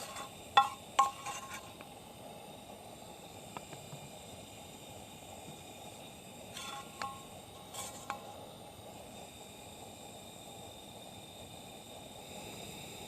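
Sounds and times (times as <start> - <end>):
tableware clinking: 0.0 - 1.7
steady low hiss: 0.0 - 13.0.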